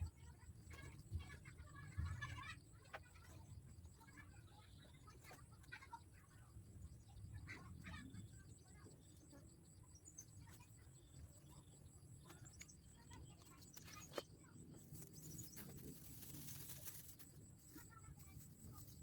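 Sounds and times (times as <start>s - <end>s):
insects: 0.0s - 19.0s
bird chirps: 8.2s - 18.0s.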